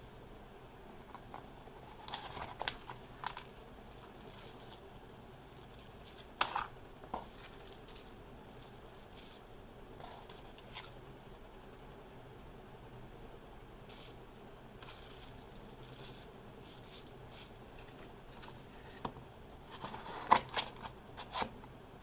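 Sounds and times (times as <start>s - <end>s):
packaging rustling: 1.1s - 4.6s.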